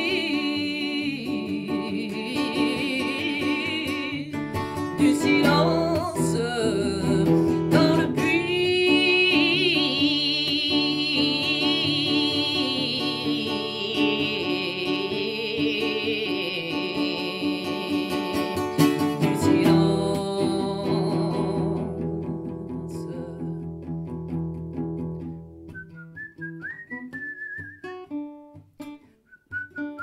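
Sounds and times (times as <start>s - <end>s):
acoustic guitar: 0.0s - 30.0s.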